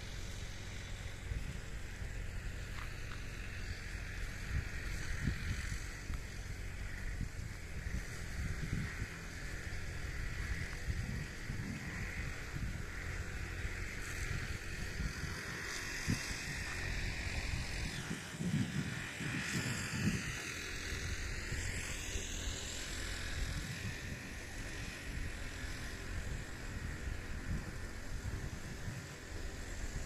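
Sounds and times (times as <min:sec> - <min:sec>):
high outdoor hiss: 0:00.0 - 0:30.0
wind buffeting microphone: 0:02.6 - 0:22.0.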